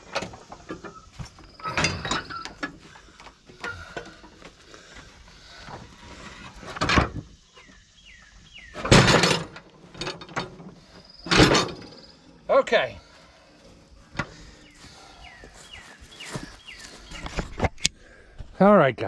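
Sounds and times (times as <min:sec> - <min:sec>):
metal clanks and rattles: 0:00.0 - 0:04.5, 0:05.7 - 0:07.4, 0:08.8 - 0:12.1.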